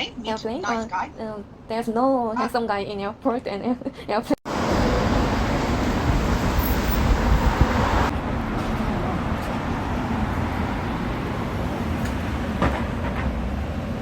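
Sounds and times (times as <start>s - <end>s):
road vehicle rumbling: 4.5s - 14.0s.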